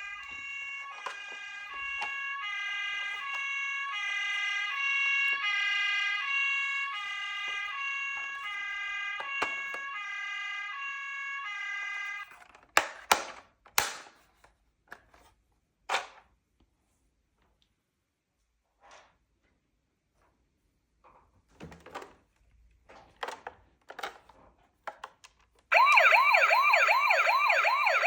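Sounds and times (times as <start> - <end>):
toy two-tone siren: 0.0 - 12.4, 25.7 - 28.0.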